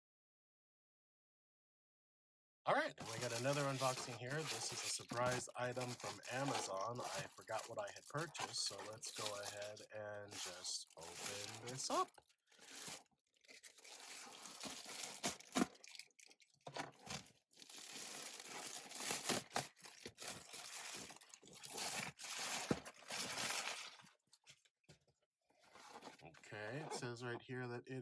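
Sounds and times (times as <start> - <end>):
packaging being torn open: 3.0 - 16.4, 17.1 - 24.0.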